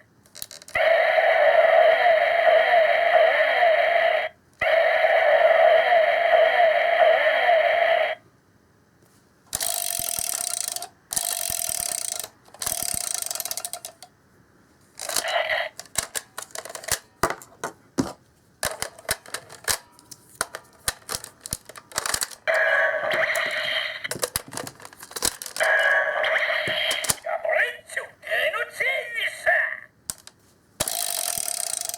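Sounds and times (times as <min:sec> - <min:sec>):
toy electronic sound effects: 0:00.7 - 0:08.2, 0:15.0 - 0:15.8, 0:21.9 - 0:24.3, 0:25.5 - 0:29.8
plastic clicks: 0:15.0 - 0:25.9, 0:30.1 - 0:31.9.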